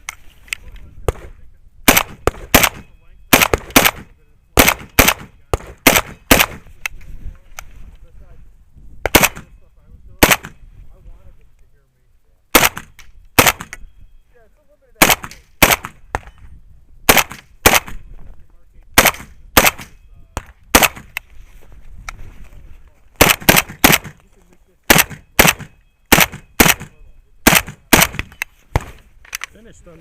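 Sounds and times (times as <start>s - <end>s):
rifle shots: 1.1s - 6.7s, 9.0s - 9.5s, 10.2s - 10.6s, 12.5s - 13.8s, 15.0s - 16.3s, 17.1s - 18.0s, 19.0s - 21.2s, 23.2s - 24.2s, 24.9s - 29.0s.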